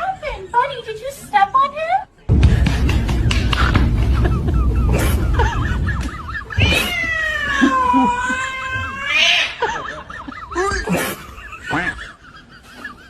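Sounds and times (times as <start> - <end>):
knocks: 2.3 - 4.6
low rumbling noise: 2.3 - 8.8
cat yowling: 6.5 - 9.6.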